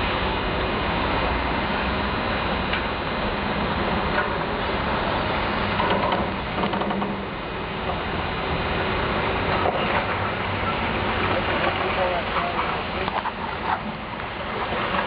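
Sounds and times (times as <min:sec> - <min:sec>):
demolition machinery rumbling: 0:00.0 - 0:15.0
clicks and clanks: 0:05.8 - 0:07.2.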